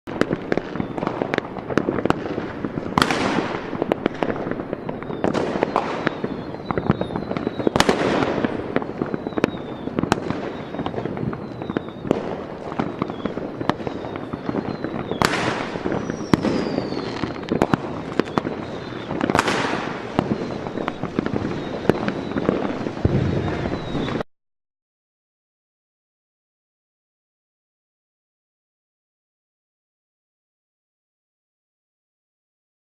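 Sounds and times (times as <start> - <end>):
big firework bursts: 0.1 - 24.3
fireworks crackling pops: 0.1 - 24.3.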